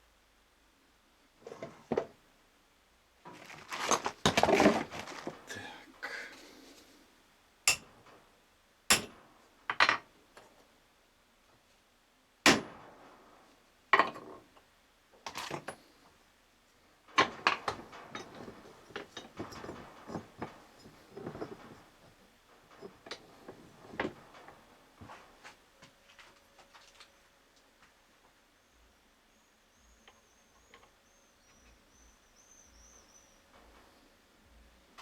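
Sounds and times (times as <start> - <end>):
metal tools knocking: 7.7 - 7.9.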